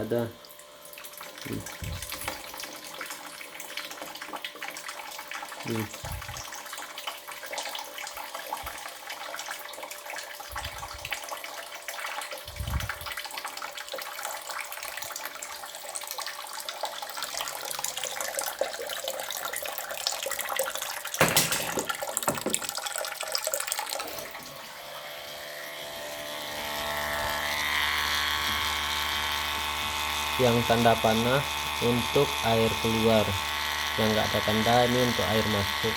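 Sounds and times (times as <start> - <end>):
motor hum: 0.0 - 4.2, 5.6 - 6.7, 12.3 - 13.2, 24.0 - 35.9
water pump rushing noise: 10.4 - 11.2, 12.4 - 13.2, 25.7 - 35.9.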